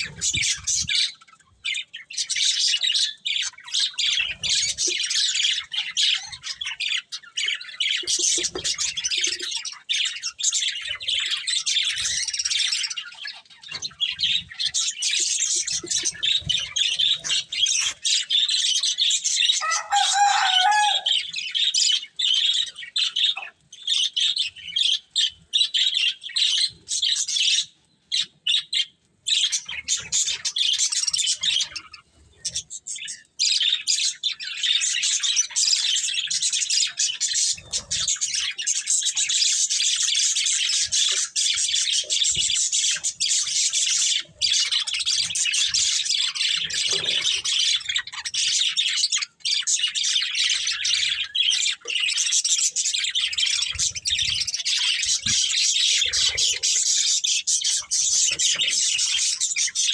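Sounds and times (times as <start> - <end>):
budgerigars chirping: 0.0 - 59.9
low long bird call: 19.6 - 21.2.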